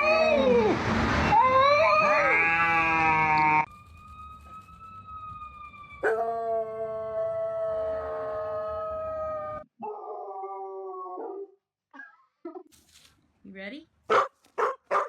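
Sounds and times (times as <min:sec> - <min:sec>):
dog howling: 0:06.0 - 0:11.6.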